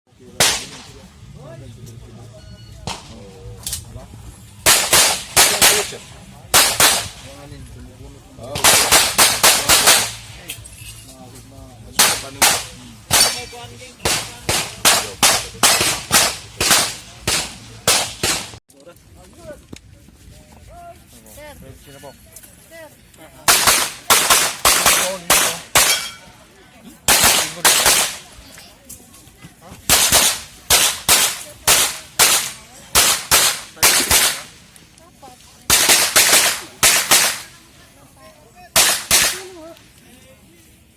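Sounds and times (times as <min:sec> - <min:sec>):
rapid pistol shots: 0:04.7 - 0:07.2, 0:08.6 - 0:10.3, 0:12.0 - 0:18.6, 0:23.5 - 0:26.0, 0:27.1 - 0:28.3, 0:29.9 - 0:34.6, 0:35.7 - 0:37.5, 0:38.8 - 0:39.5.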